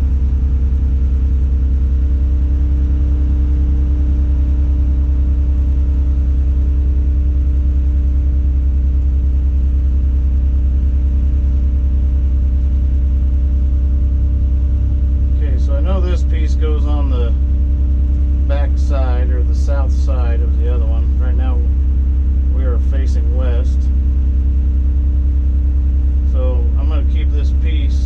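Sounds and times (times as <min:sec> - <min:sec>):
diesel engine droning: 0:00.0 - 0:05.9, 0:12.7 - 0:28.0
faint steady hum: 0:00.0 - 0:28.0.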